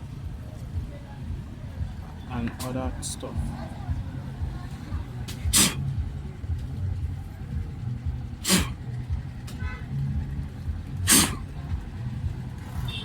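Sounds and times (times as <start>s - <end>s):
steady low rumble: 0.0s - 13.0s
sharp puffs of breath: 5.4s - 5.9s, 8.4s - 8.8s, 11.1s - 11.4s.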